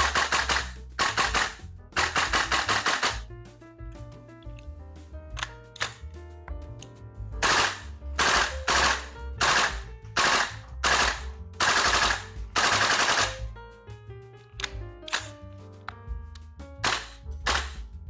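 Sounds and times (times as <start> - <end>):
airsoft rifle full-auto bursts: 0.0 - 3.2, 7.4 - 13.4
background music: 0.0 - 18.0.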